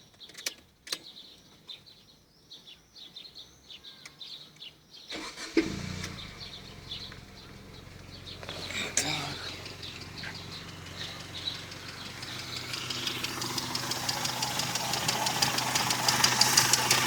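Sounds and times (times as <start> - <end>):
birds chirping faintly: 0.0 - 17.0
car engine starting and idling: 5.1 - 17.0.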